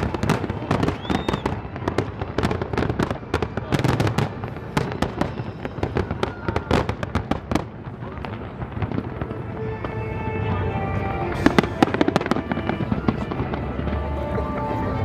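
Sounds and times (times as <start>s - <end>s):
fireworks bangs and crackles: 0.0s - 15.0s
steady musical tones: 9.2s - 15.0s.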